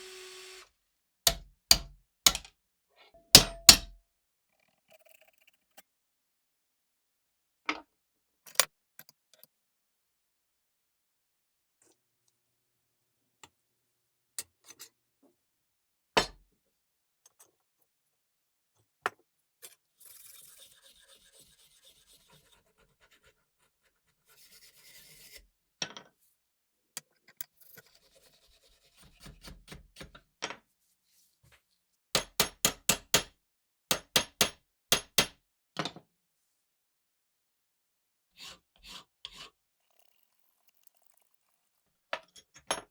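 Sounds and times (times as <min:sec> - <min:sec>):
metal knocks and clinks: 0:03.4 - 0:03.9.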